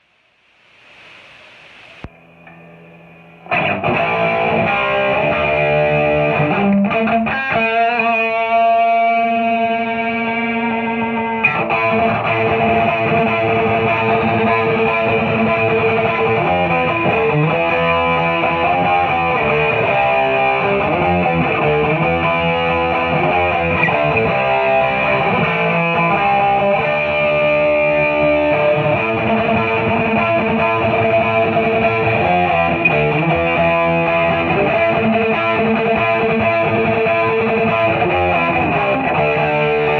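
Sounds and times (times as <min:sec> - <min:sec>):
faint hiss: 0:00.0 - 0:02.1
distorted electric guitar: 0:00.0 - 0:39.9.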